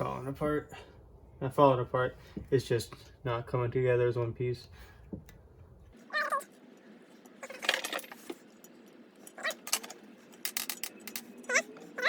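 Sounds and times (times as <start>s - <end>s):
cat meowing: 6.1s - 6.5s
metal bearing rollers clinking: 7.1s - 12.0s.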